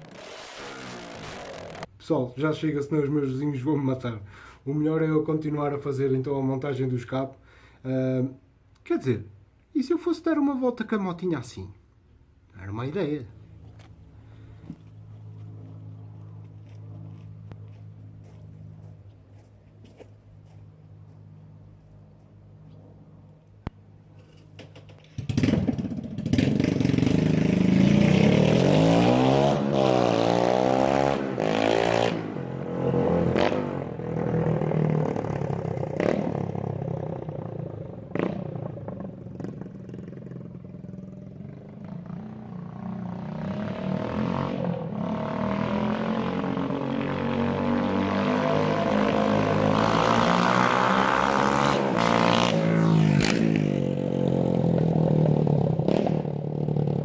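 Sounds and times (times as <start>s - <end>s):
exhaust pops: 0.0s - 1.9s, 24.5s - 27.1s
open-piped motorcycle engine revving: 0.0s - 1.9s, 25.0s - 57.0s.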